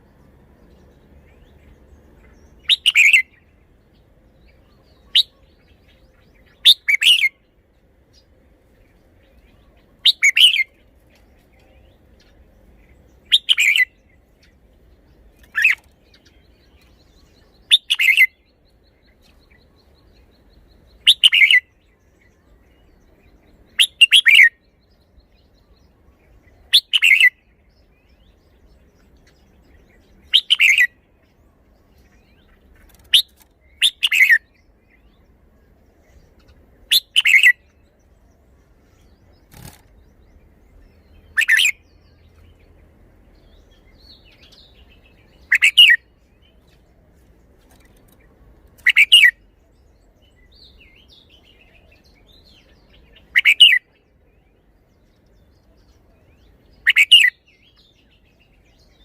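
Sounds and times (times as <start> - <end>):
bird singing loud phrases: 0.0 - 59.0.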